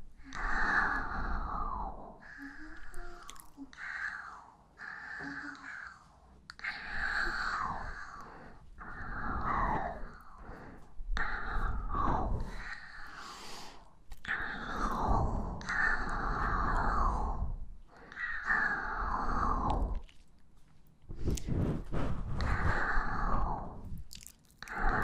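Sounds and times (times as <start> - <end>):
breathy exhalations into microphone: 21.1 - 25.0.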